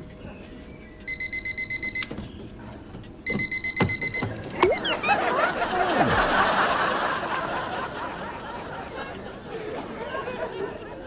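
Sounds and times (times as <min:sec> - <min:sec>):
alarm clock beeping: 0:01.1 - 0:02.1, 0:03.3 - 0:05.3
studio audience laughter: 0:04.7 - 0:11.0.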